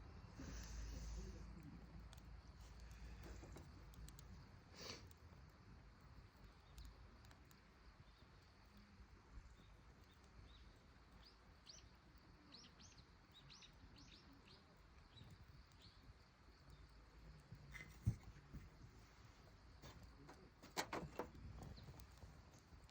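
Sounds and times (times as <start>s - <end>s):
faint bird chirps: 8.0s - 18.2s.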